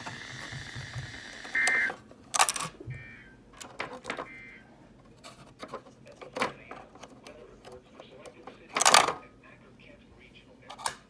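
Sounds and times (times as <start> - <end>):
two-tone digital bursts: 0.0 - 2.0.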